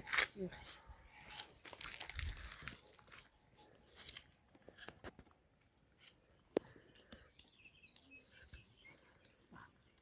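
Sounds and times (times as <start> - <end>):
dry brushwood crunching: 1.1 - 5.4.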